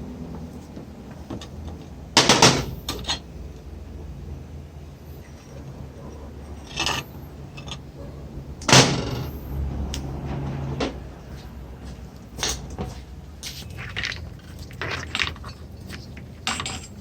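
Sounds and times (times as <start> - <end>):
low steady hum: 0.0 - 17.0
metal parts clunking: 1.3 - 3.3, 5.2 - 7.9, 8.6 - 10.0, 12.4 - 17.0.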